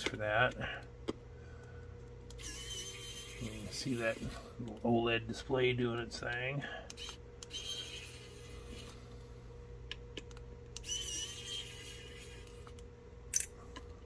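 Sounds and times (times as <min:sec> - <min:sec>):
electric screwdriver whirring: 0:02.3 - 0:04.4, 0:06.9 - 0:09.0, 0:10.8 - 0:12.8.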